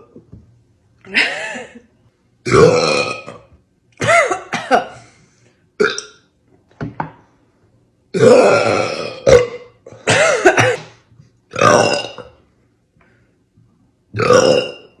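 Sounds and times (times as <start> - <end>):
woman burping: 2.5 - 5.0, 5.8 - 6.2, 8.2 - 12.3, 14.2 - 15.0.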